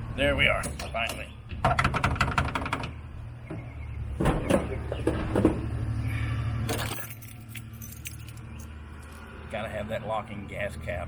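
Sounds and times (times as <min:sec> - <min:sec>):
keys clinking and rattling: 0:06.7 - 0:09.2.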